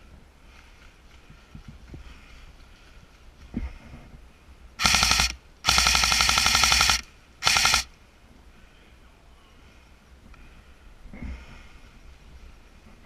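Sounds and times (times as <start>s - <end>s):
airsoft gun firing bursts: 4.8s - 7.9s.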